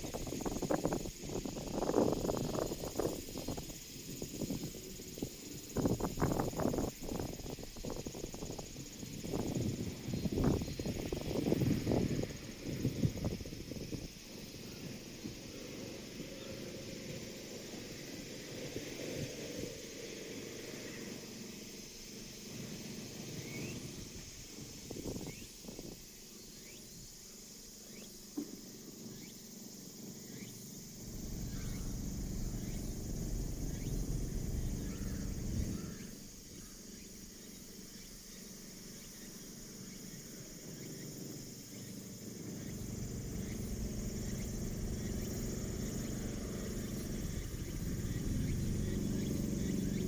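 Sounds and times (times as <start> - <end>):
insects buzzing: 0.0 - 50.0
low rumble: 31.0 - 36.5, 42.6 - 50.0.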